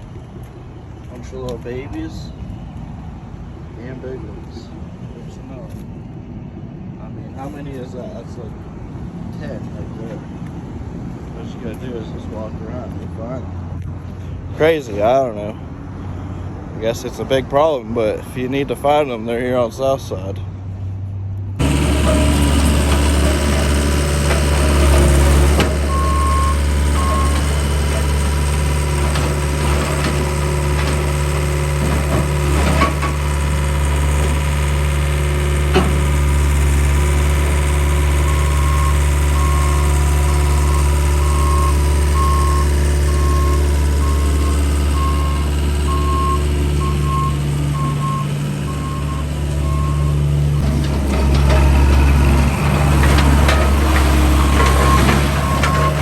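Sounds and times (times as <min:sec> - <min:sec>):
diesel engine running: 0:21.5 - 0:56.0
reversing alarm beeps: 0:24.9 - 0:27.7, 0:38.2 - 0:50.7, 0:54.4 - 0:56.0.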